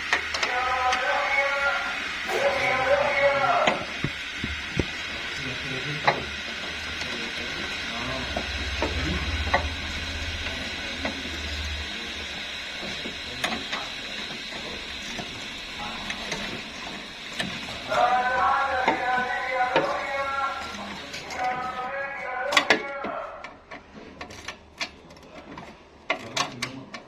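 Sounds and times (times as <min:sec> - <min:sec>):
low hum: 0:00.3 - 0:13.6.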